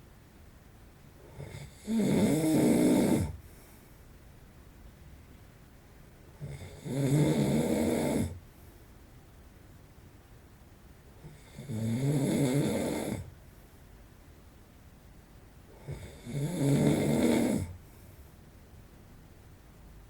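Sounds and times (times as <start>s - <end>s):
man snoring: 1.3s - 3.4s, 6.4s - 8.4s, 11.2s - 13.3s, 15.8s - 17.8s.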